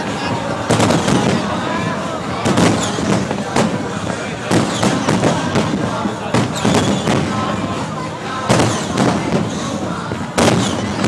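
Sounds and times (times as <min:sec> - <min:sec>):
crowd chatter: 0:00.0 - 0:11.0
fireworks crackling and banging: 0:00.0 - 0:11.0.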